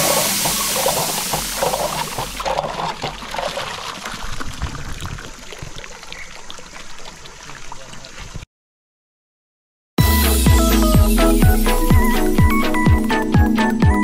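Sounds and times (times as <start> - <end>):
water trickling: 0.0 - 8.5
electronic background music: 10.0 - 14.0.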